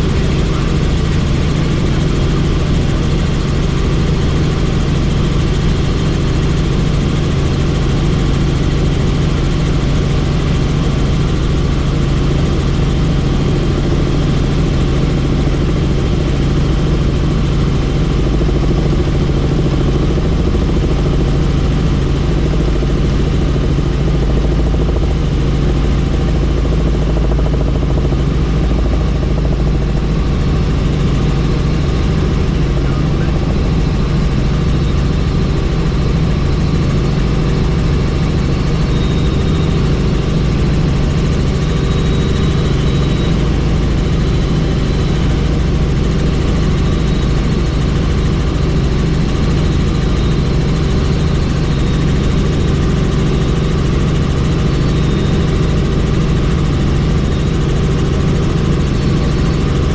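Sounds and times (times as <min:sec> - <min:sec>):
helicopter engine and rotor noise: 0:00.0 - 0:59.9.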